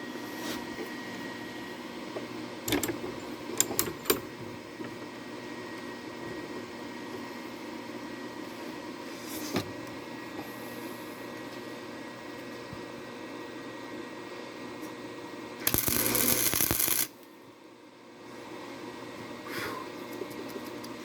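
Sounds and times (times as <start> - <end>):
fan hum: 15.3 - 17.5.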